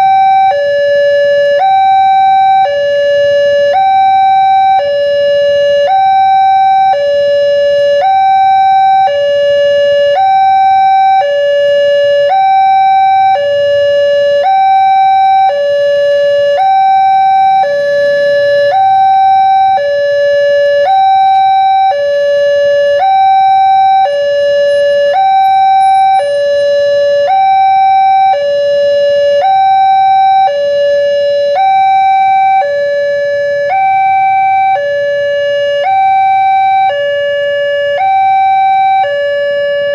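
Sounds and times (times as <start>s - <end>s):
level crossing two-tone alarm: 0.0s - 39.9s.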